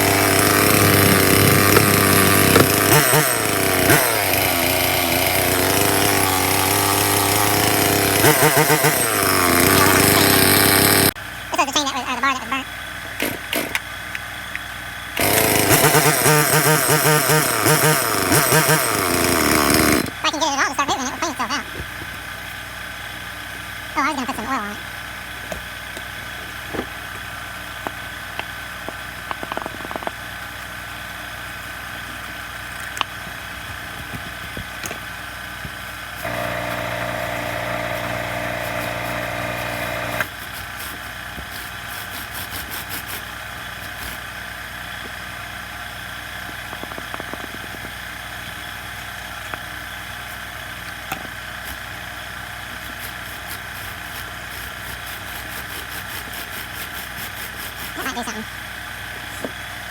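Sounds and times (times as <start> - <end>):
chainsaw engine idling and revving: 0.0 - 11.4, 13.0 - 14.0, 15.1 - 20.2, 34.8 - 40.4.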